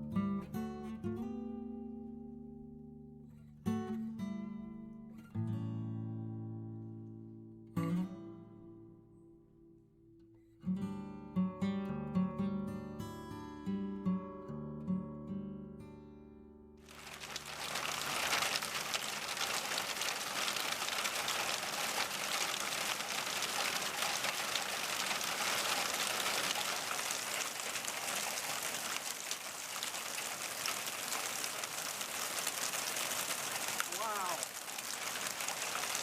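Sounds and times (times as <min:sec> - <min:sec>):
guitar tune: 0:00.0 - 0:09.4, 0:10.6 - 0:16.8
water with dense patter: 0:16.8 - 0:36.0.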